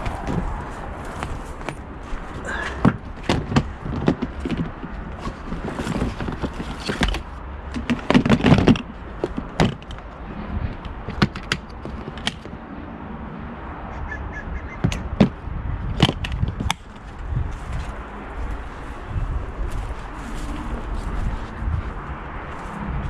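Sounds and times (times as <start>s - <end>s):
knocks and thuds of handling: 0.0s - 10.0s.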